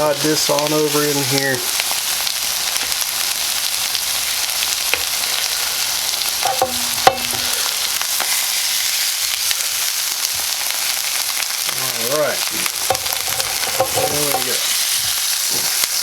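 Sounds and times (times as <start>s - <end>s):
chicken sizzling in a frying pan: 0.0s - 16.0s
utensil clinking against pan: 6.4s - 7.6s, 12.9s - 14.6s.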